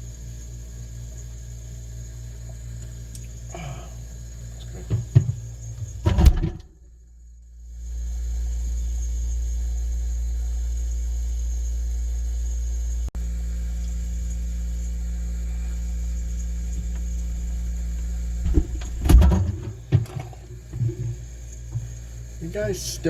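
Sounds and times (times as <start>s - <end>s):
refrigerator motor humming: 0.0s - 23.0s
knocks and rustles: 4.6s - 6.8s, 18.0s - 22.2s.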